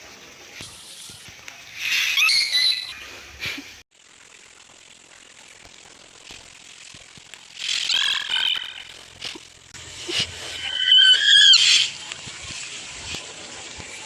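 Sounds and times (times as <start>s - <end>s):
puppy squealing and crying: 2.1s - 2.9s.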